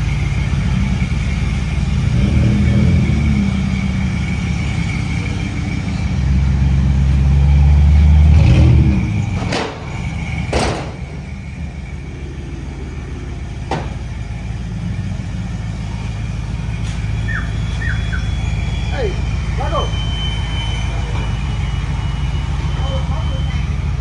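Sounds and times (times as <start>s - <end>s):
engine revving deep rumble: 0.0s - 24.0s
exhaust cracks: 0.0s - 24.0s.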